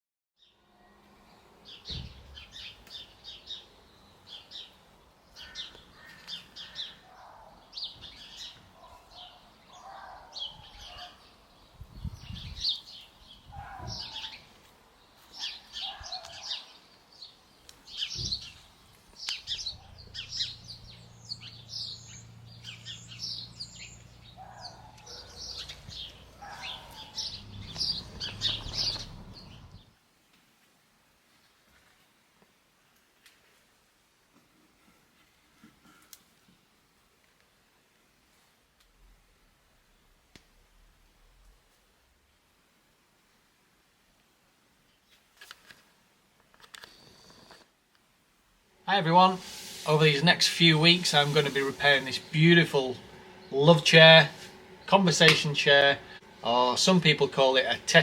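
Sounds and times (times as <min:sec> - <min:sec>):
birds chirping and singing: 0:01.6 - 0:14.5, 0:15.2 - 0:29.9, 0:49.0 - 0:58.0.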